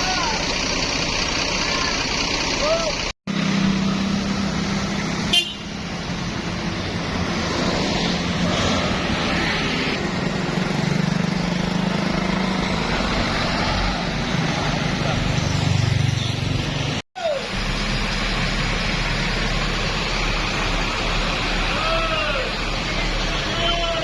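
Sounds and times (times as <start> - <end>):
bus engine running: 0.0 - 24.0
road noise: 0.0 - 24.0
bus horn sounding: 5.3 - 5.9.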